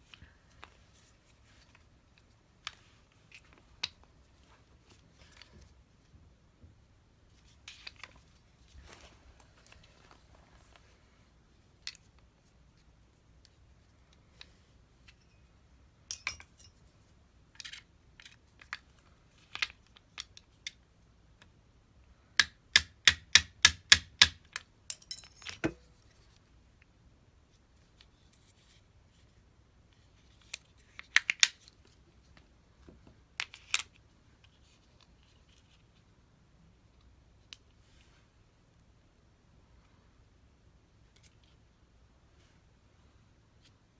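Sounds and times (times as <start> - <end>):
small tools clicking and tapping: 16.1 - 16.7, 22.4 - 25.9.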